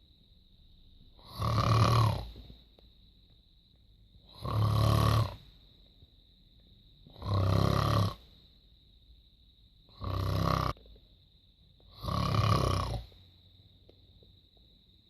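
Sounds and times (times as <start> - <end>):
quiet breaths: 0.0 - 15.0
person snoring loudly: 1.2 - 2.5, 4.2 - 5.5, 7.1 - 8.3, 9.9 - 10.8, 11.9 - 13.2.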